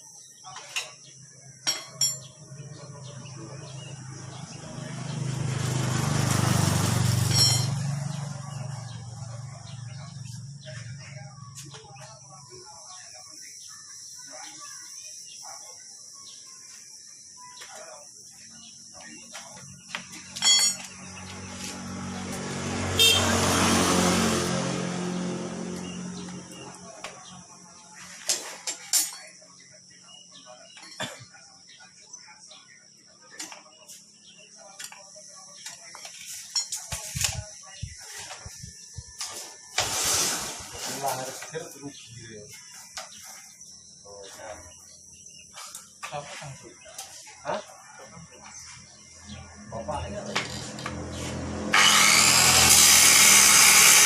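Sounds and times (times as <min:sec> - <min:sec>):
motor vehicle passing: 0:03.4 - 0:11.0, 0:20.2 - 0:27.4, 0:48.6 - 0:54.0.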